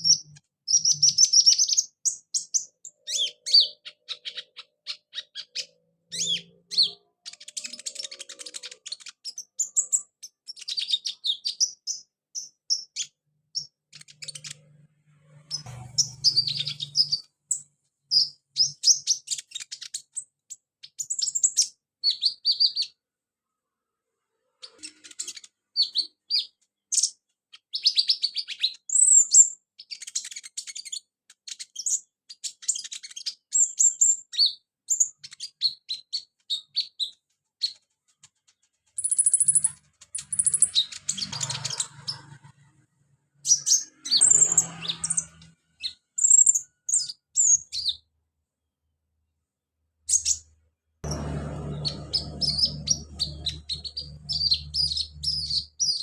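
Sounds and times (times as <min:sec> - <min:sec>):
bird chirping and trilling: 0:00.0 - 0:23.0, 0:24.4 - 0:37.8, 0:39.0 - 0:48.1, 0:50.1 - 0:56.0.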